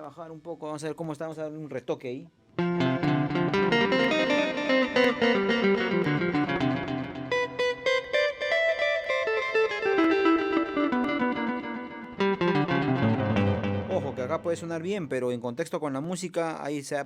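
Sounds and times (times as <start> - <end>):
electric guitar melody with reverb: 2.5 - 15.1.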